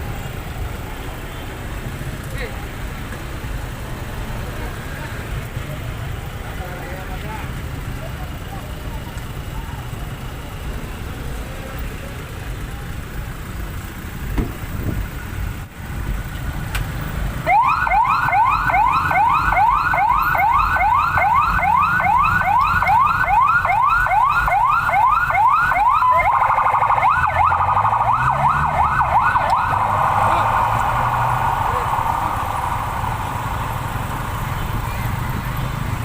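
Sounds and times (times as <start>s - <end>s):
street traffic noise: 0.0s - 36.0s
ambulance siren: 17.4s - 36.0s.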